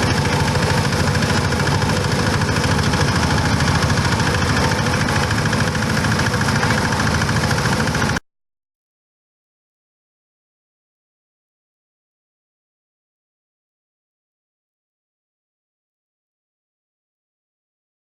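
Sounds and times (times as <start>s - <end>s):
foam shredding machine churning: 0.0s - 8.2s.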